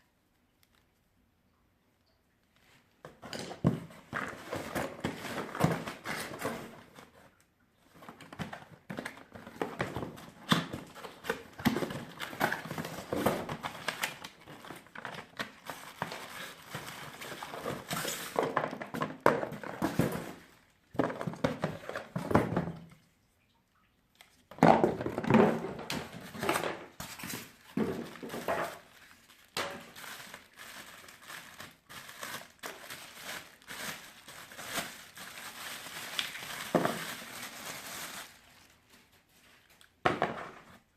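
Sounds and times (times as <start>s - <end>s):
plastic packaging crinkling: 8.0s - 22.2s, 25.0s - 39.8s.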